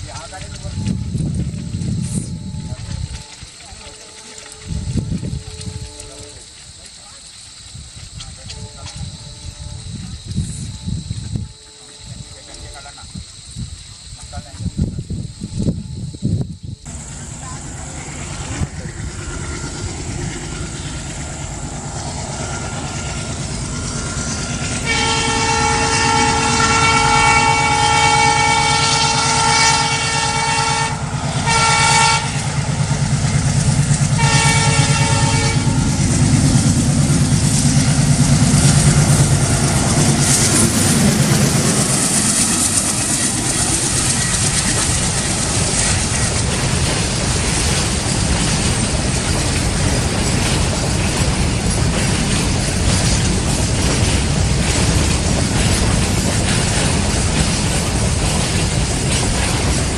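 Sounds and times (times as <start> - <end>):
train wagons rattling: 0.0 - 16.1, 16.8 - 59.9
locomotive engine rumble: 0.0 - 59.9
locomotive horn blasts: 2.3 - 6.6, 22.2 - 32.8, 34.0 - 36.2.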